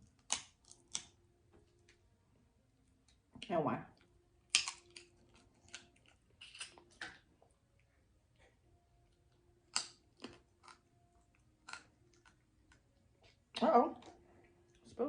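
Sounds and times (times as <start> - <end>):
chewing with wet smacks and crunches: 4.0 - 8.5, 9.1 - 13.4.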